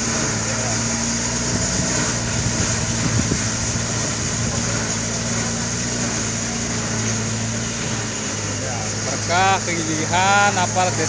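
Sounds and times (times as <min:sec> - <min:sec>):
road and wind noise on gravel: 0:00.0 - 0:06.8
vehicle engine humming: 0:00.0 - 0:11.0.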